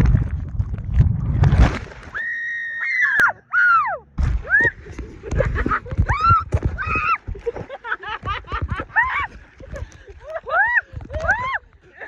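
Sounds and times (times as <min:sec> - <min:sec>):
woman screaming: 0:02.2 - 0:04.6
wind buffeting microphone: 0:04.6 - 0:11.7.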